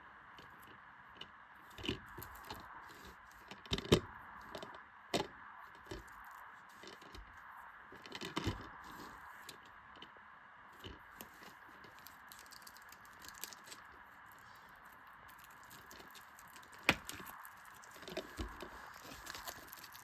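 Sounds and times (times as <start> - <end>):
packaging crinkling: 11.2 - 20.0.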